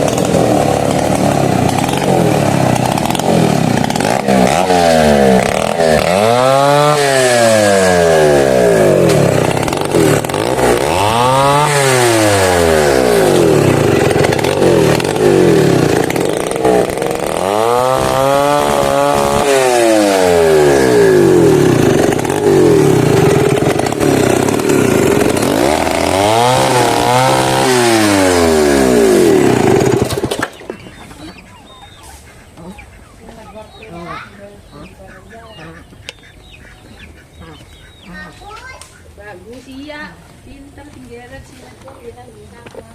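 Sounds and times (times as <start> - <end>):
chainsaw cutting into tree: 0.0 - 30.8.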